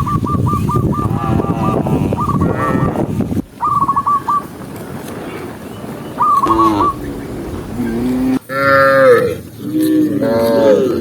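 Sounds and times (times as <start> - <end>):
bird chirping: 5.7 - 8.5
low drawn-out animal calls: 6.2 - 11.0.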